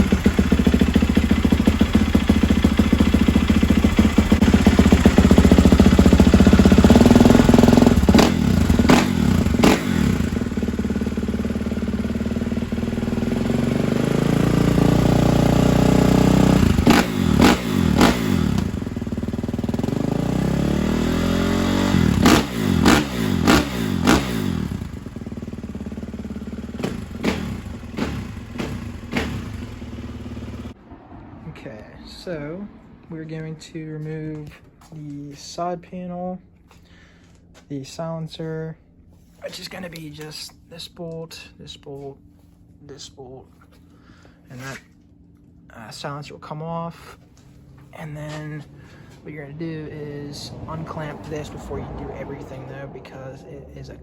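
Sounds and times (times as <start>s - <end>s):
dirt bike engine idling and revving: 0.0s - 34.2s, 47.0s - 54.0s.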